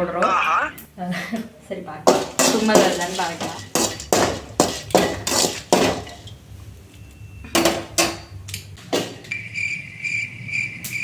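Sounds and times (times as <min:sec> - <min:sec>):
metal utensils clanking on pots: 0:02.0 - 0:06.4, 0:07.6 - 0:09.3.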